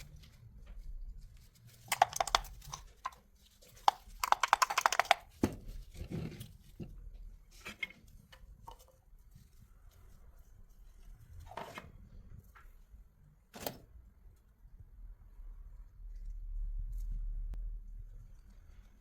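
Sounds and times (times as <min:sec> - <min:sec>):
rapid ratchet clicks: 0:03.9 - 0:05.2.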